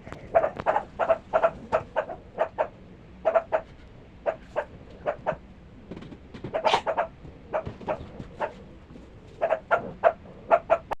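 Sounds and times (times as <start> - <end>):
animal yipping: 6.5 - 8.6, 9.4 - 11.0.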